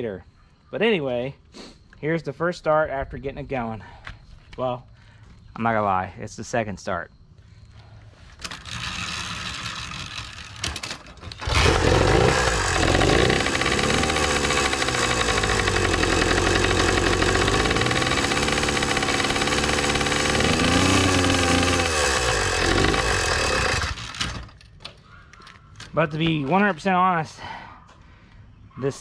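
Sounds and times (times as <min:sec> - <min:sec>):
engine cranking: 0:08.3 - 0:24.8
two-stroke engine running: 0:08.5 - 0:24.6.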